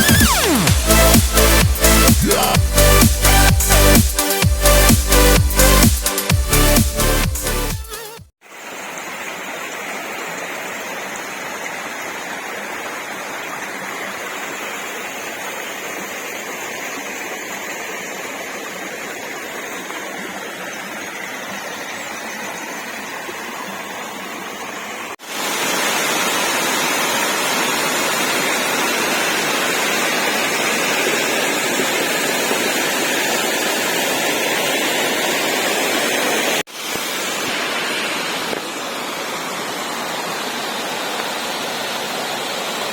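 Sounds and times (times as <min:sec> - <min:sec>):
waterfall rushing: 0:00.0 - 0:07.2, 0:24.5 - 0:42.9.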